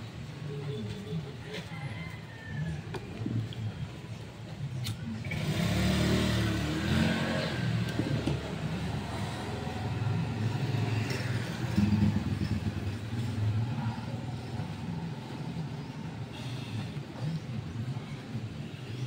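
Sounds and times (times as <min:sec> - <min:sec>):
vehicle engine running: 0:05.2 - 0:15.2.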